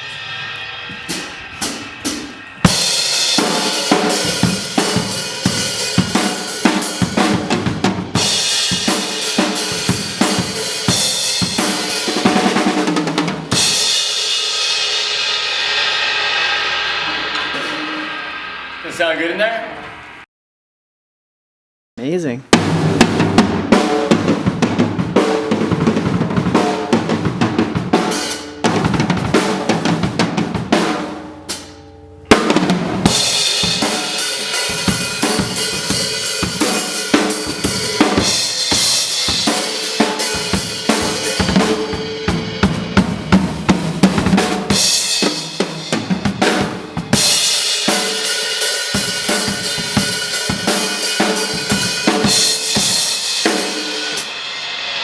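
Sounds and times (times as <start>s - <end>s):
drum kit groove: 0.0s - 19.8s, 22.0s - 55.0s
cymbal crash: 0.0s - 20.2s, 31.5s - 55.0s.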